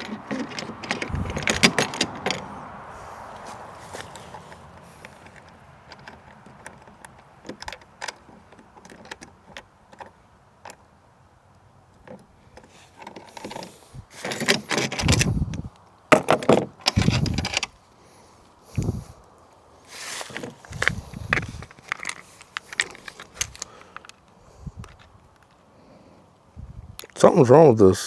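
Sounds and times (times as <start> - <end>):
small hardware clicking and rattling: 0.0 - 2.7, 3.9 - 10.9, 11.9 - 17.8, 20.3 - 25.6.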